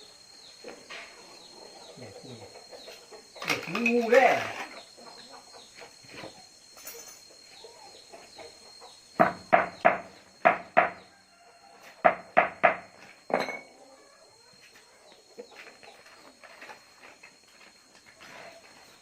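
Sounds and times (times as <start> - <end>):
chicken clucking: 0.6 - 6.6, 7.2 - 9.1, 13.7 - 19.0.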